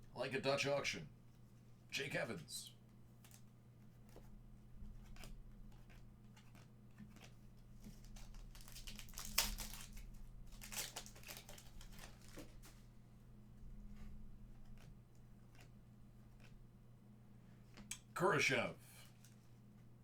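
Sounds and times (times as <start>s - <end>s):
faint steady hum: 0.0s - 20.0s
cards rustling and crinkling: 2.9s - 13.0s, 13.6s - 16.6s, 19.0s - 19.7s.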